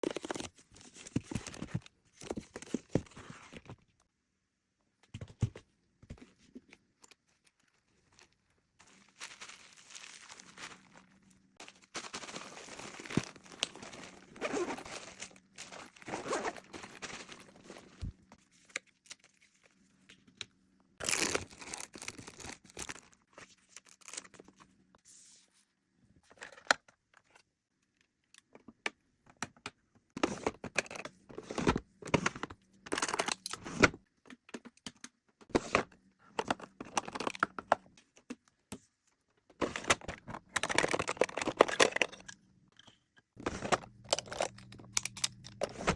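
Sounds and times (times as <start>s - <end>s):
packaging crinkling and tearing: 7.5s - 18.1s, 21.0s - 23.2s.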